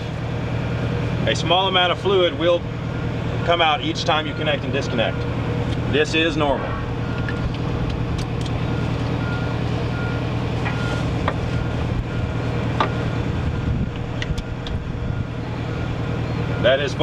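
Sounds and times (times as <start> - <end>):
engine running: 0.0 - 17.0
backup alarm beeping: 2.9 - 5.6, 6.8 - 7.8, 8.6 - 17.0.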